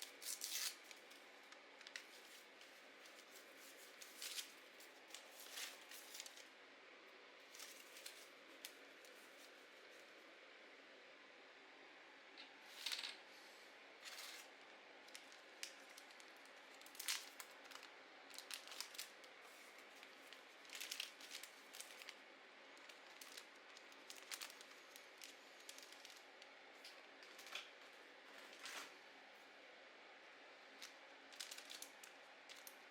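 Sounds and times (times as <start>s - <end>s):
paper rustling and scraping: 0.2s - 1.2s, 1.8s - 6.5s, 7.5s - 9.6s.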